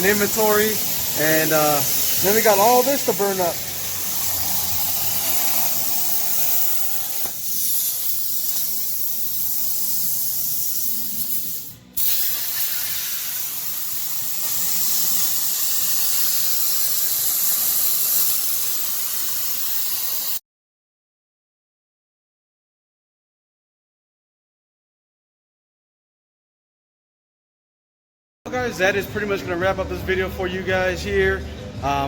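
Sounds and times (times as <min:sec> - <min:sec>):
plasma cutter torch hissing: 0:00.0 - 0:20.4.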